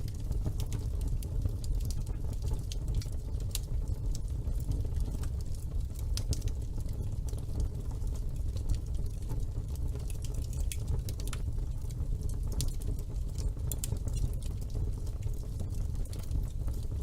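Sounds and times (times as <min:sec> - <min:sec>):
fire crackling and popping: 0:00.0 - 0:17.0
fire flames rumbling: 0:00.0 - 0:17.0.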